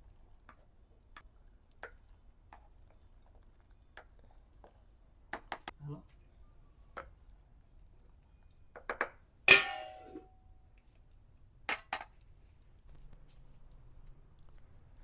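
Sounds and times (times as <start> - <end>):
metal clang with ringing tone: 9.5 - 10.4.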